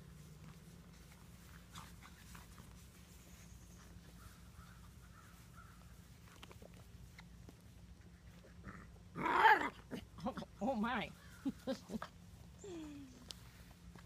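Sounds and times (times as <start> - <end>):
puppies scuffling: 0.0 - 8.6.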